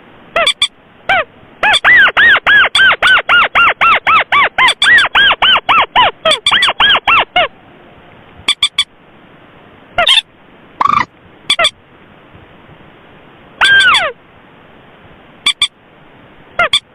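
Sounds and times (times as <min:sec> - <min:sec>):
faint hiss: 0:00.0 - 0:01.6, 0:07.5 - 0:16.9
moorhen and crake calls: 0:00.4 - 0:07.6, 0:08.5 - 0:09.0, 0:09.9 - 0:11.8, 0:13.6 - 0:14.2, 0:15.4 - 0:15.8, 0:16.6 - 0:16.9.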